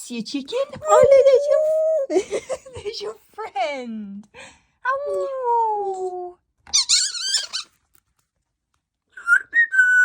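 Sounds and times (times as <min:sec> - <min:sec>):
parrot calling: 0:06.7 - 0:07.8
parrot squawk: 0:06.7 - 0:07.8.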